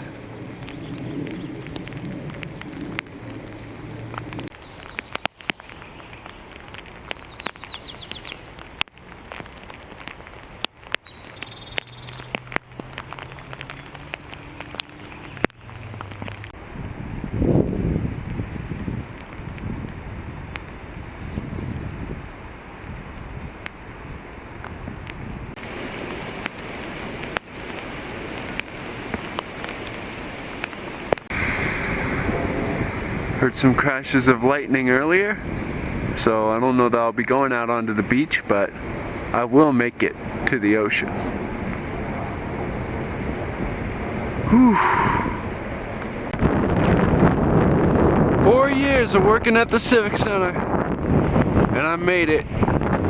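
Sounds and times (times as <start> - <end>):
rain falling: 0.0 - 53.0
raindrops tapping close by: 0.0 - 53.0
small bird chirping: 4.5 - 8.5, 9.9 - 15.4.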